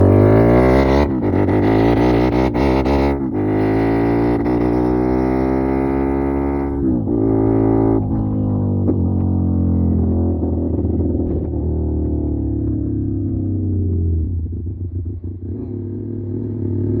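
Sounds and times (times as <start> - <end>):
motorcycle engine at high revs: 0.0 - 17.0
exhaust pops: 8.0 - 14.3.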